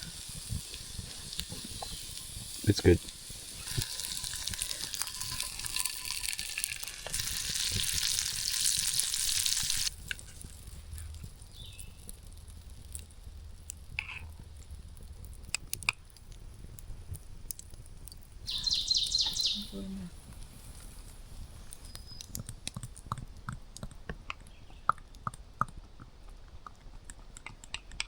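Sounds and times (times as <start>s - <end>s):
food sizzling in a pan: 0.0s - 10.8s.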